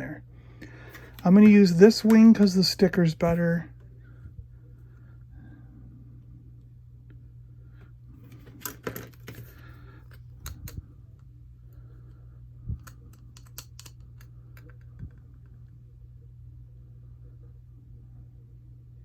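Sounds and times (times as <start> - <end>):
steady low hum: 0.0 - 19.0
plastic toy parts clicking: 12.8 - 14.8.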